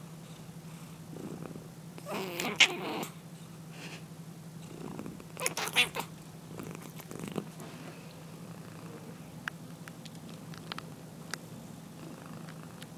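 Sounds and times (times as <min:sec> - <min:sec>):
cat snoring: 0:01.1 - 0:03.1, 0:04.6 - 0:05.2, 0:12.0 - 0:12.8.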